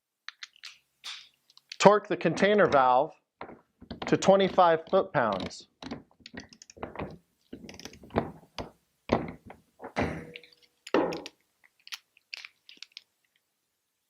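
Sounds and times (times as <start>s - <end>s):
hard metal thunks and clunks: 9.1s - 10.4s.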